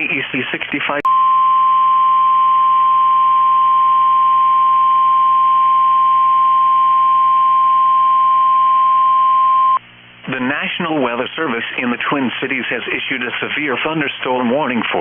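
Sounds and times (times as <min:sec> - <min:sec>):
faint hum: 0:00.3 - 0:15.0
steady warning alarm tone: 0:01.1 - 0:09.8.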